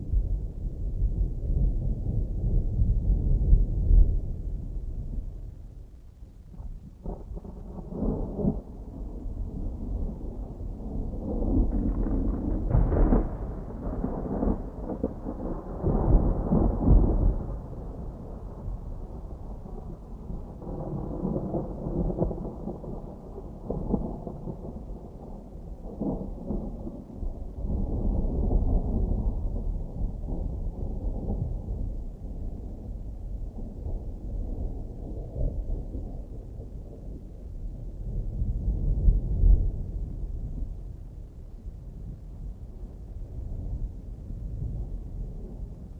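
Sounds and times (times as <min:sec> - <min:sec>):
distant thunder rumbling: 0:06.5 - 0:45.9.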